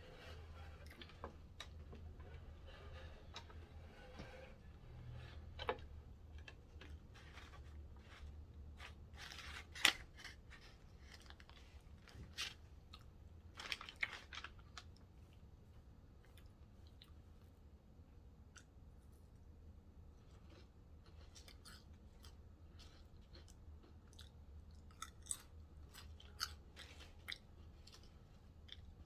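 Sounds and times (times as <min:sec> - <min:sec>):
chewing and crisp crunches: 0:20.2 - 0:29.0.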